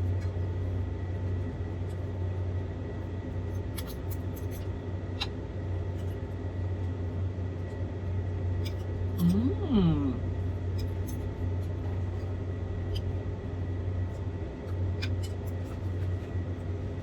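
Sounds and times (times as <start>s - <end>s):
low room hum: 0.0s - 17.0s
utensils clicking against plate: 3.6s - 5.3s, 10.8s - 11.3s, 14.7s - 16.1s.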